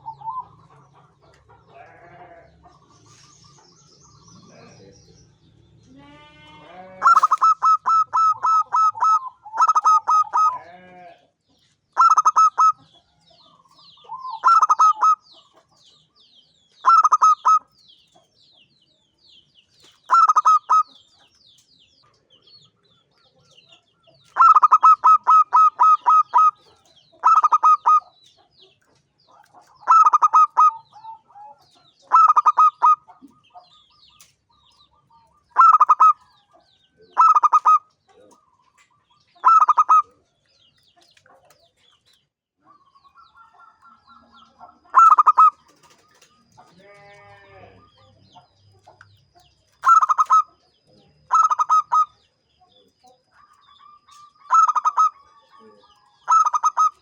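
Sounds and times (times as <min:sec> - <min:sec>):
dove cooing: 0:00.0 - 0:00.8, 0:06.9 - 0:10.7, 0:12.0 - 0:12.9, 0:13.9 - 0:15.2, 0:24.4 - 0:28.1, 0:29.8 - 0:33.4, 0:35.6 - 0:36.3, 0:37.2 - 0:38.5, 0:39.4 - 0:40.1, 0:44.9 - 0:46.3, 0:49.8 - 0:50.6, 0:51.3 - 0:52.2, 0:53.4 - 0:57.0.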